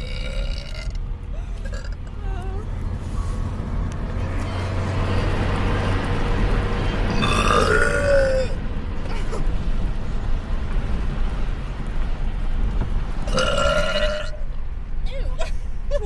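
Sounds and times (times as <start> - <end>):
woman burping: 7.2 - 9.4, 13.3 - 14.4.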